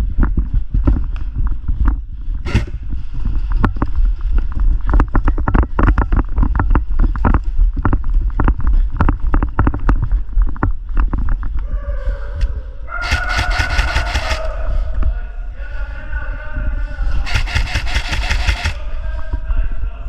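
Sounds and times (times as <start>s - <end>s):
wind rumble on microphone: 0.0s - 17.3s, 18.5s - 20.0s
sharp clicks and knocks: 17.3s - 18.8s.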